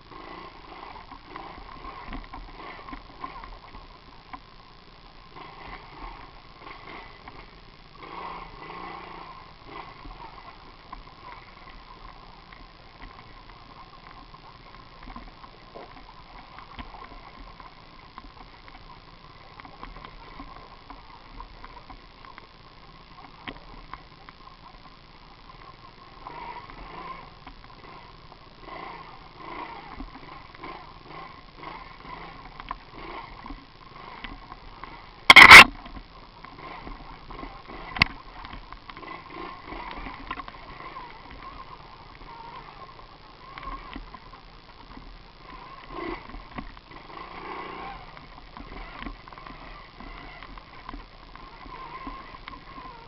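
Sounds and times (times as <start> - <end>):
small motorbike engine running: 0.0 - 22.0, 25.6 - 53.0.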